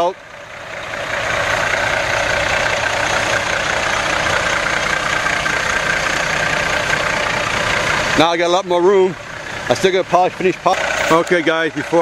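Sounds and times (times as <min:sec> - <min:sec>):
diesel truck engine idling: 0:00.0 - 0:12.0.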